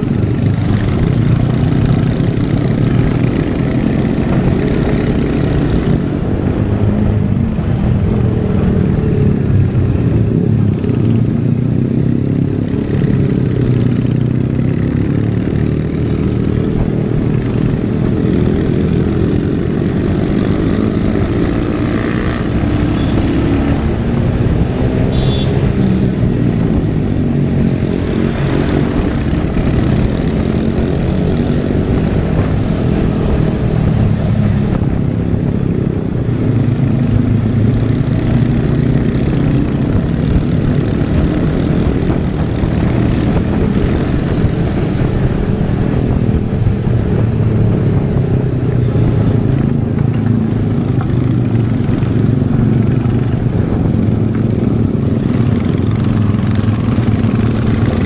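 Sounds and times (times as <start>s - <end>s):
motorcycle engine and exhaust running: 0.0s - 58.0s.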